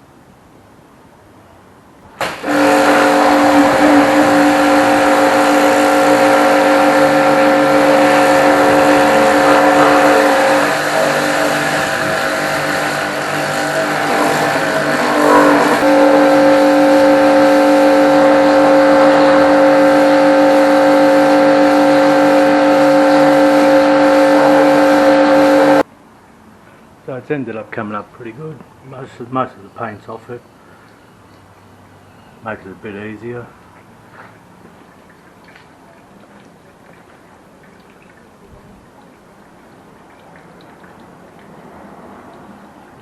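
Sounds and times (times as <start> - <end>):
pressure washer motor hum: 2.0 - 25.8
spray jet hissing: 2.2 - 25.8.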